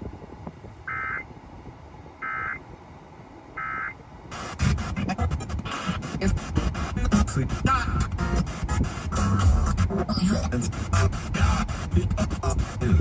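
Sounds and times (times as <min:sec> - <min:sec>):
music: 0:04.4 - 0:13.0.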